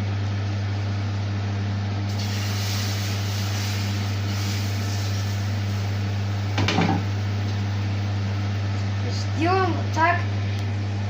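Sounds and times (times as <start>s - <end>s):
batter sizzling in a frying pan: 2.1s - 7.6s.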